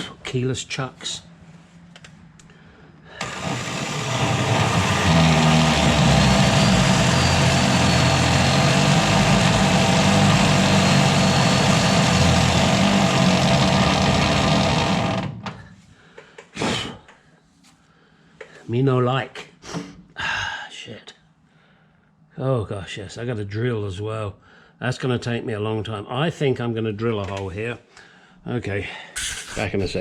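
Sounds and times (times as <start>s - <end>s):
electric drill grinding metal: 3.2s - 15.6s.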